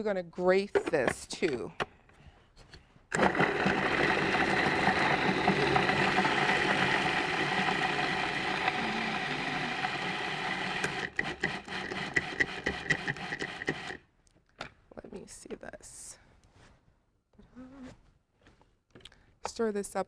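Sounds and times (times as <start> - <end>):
food processor motor humming: 3.1 - 14.0.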